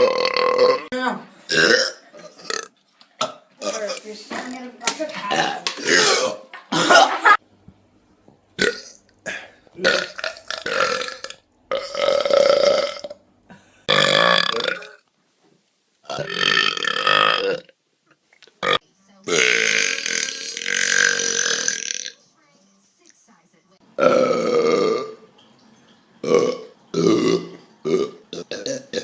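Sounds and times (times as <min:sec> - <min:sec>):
person burping: 0:00.0 - 0:03.9, 0:05.3 - 0:07.3, 0:08.6 - 0:13.2, 0:13.8 - 0:15.0, 0:16.1 - 0:17.7, 0:18.6 - 0:22.2, 0:24.0 - 0:25.2, 0:26.2 - 0:29.0.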